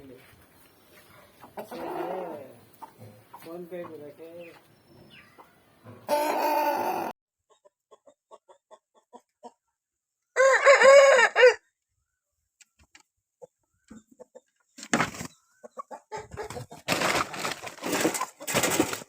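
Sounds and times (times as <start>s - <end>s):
chicken soft clucks: 1.0s - 9.8s, 12.7s - 14.8s, 15.6s - 16.9s
chicken harsh call: 1.6s - 2.5s, 6.1s - 7.2s
wavering crow-like call: 6.1s - 7.1s.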